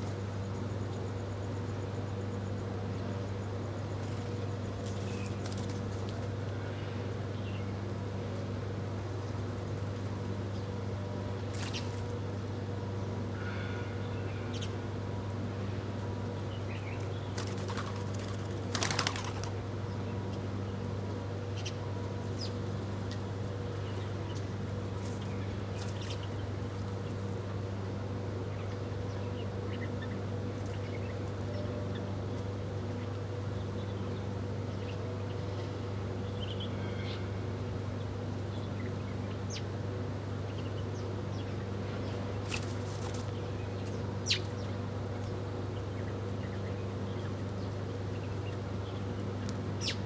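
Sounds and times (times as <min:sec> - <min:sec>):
wings fluttering: 0:04.0 - 0:06.3, 0:17.4 - 0:19.6, 0:42.4 - 0:43.4
small birds chirping: 0:40.4 - 0:50.0.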